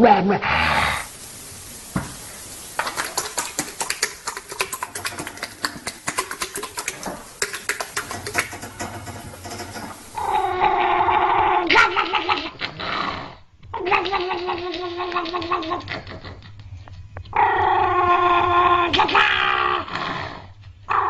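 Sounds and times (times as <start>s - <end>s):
rapid irregular clicking and tapping: 2.8s - 10.2s.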